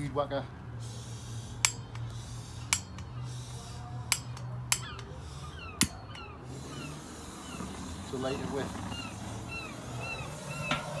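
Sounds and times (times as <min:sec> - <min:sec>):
sharp clicks: 0:01.6 - 0:03.2, 0:04.1 - 0:05.2
bird chirping: 0:01.8 - 0:11.0.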